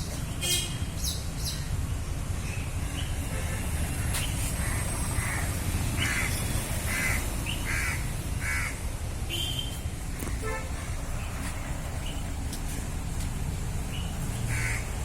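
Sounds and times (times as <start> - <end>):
crow cawing: 4.6 - 8.8, 14.5 - 14.9.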